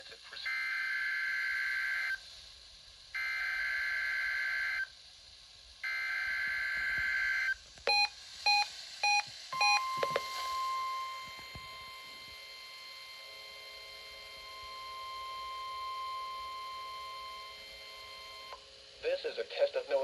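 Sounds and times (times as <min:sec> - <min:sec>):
steady warning alarm tone: 0:05.8 - 0:18.6
digital data tone bursts: 0:05.9 - 0:18.6
short electronic beeps: 0:07.9 - 0:12.3.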